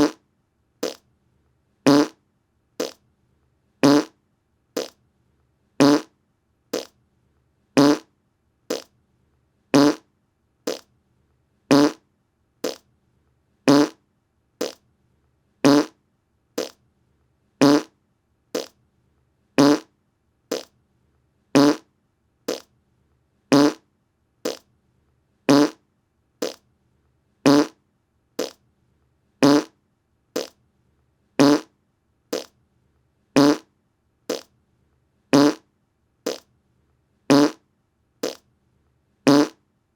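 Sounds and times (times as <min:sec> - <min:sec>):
short fart sounds: 0:00.0 - 0:00.2, 0:00.8 - 0:01.0, 0:01.9 - 0:02.2, 0:02.8 - 0:03.0, 0:03.8 - 0:04.2, 0:04.8 - 0:05.0, 0:05.8 - 0:06.1, 0:06.8 - 0:07.0, 0:07.8 - 0:08.1, 0:08.7 - 0:08.9, 0:09.8 - 0:10.1, 0:10.7 - 0:10.9, 0:11.7 - 0:12.0, 0:12.6 - 0:12.8, 0:13.7 - 0:14.0, 0:14.6 - 0:14.8, 0:15.6 - 0:16.0, 0:16.6 - 0:16.8, 0:17.6 - 0:17.9, 0:18.6 - 0:18.8, 0:19.6 - 0:19.9, 0:20.5 - 0:20.7, 0:21.6 - 0:21.9, 0:22.5 - 0:22.7, 0:23.5 - 0:23.8, 0:24.4 - 0:24.7, 0:25.5 - 0:25.8, 0:26.4 - 0:26.6, 0:27.5 - 0:27.8, 0:28.4 - 0:28.6, 0:29.4 - 0:29.8, 0:30.4 - 0:30.6, 0:31.4 - 0:31.7, 0:32.3 - 0:32.6, 0:33.4 - 0:33.7, 0:34.3 - 0:34.5, 0:35.4 - 0:35.6, 0:36.3 - 0:36.5, 0:37.3 - 0:37.6, 0:38.2 - 0:38.4, 0:39.3 - 0:39.6.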